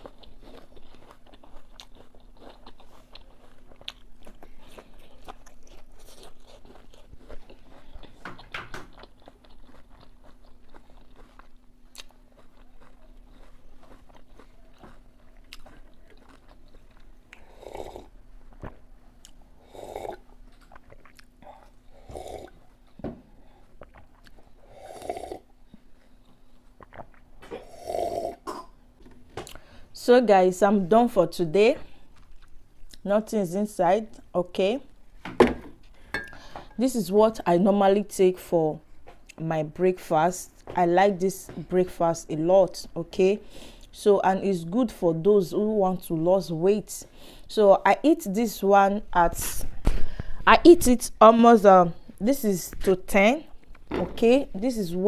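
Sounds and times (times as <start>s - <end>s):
apple crunching and chewing: 0.0s - 28.7s, 31.8s - 33.1s
faint steady hum: 0.0s - 55.0s.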